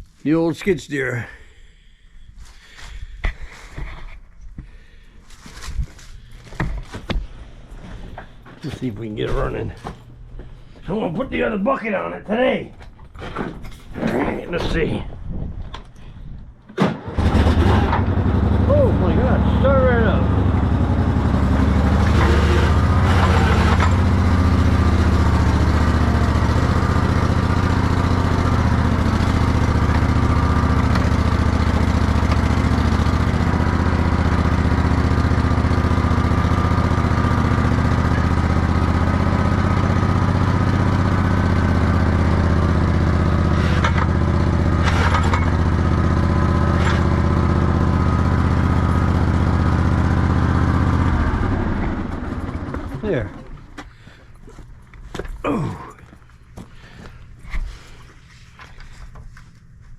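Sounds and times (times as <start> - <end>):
engine running: 15.7 - 59.8
engine knocks: 16.6 - 54.2.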